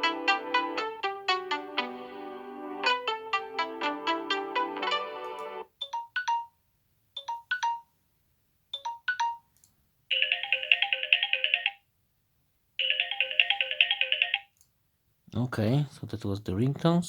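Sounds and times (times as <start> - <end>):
musical ringtone: 0.0 - 6.6, 7.2 - 8.0, 8.8 - 9.5, 10.1 - 11.8, 12.8 - 14.5.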